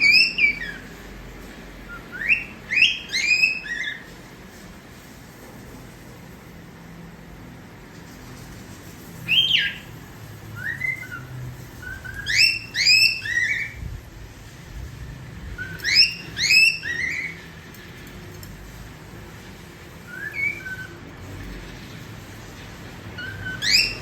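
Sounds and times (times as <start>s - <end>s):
cockatiel whistling: 0.0s - 0.9s, 1.9s - 4.1s, 9.3s - 9.9s, 10.6s - 13.8s, 15.5s - 17.5s, 20.0s - 21.0s, 23.2s - 24.0s.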